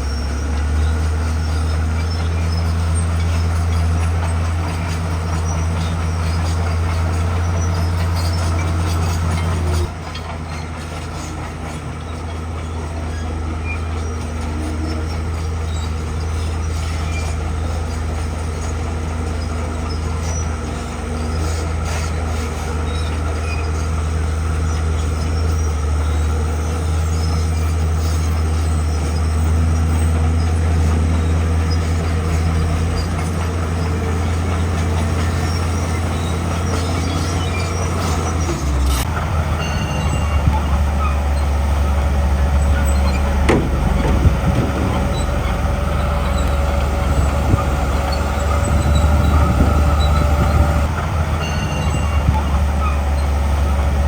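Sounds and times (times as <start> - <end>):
bulldozer diesel engine under load: 0.0 - 54.0.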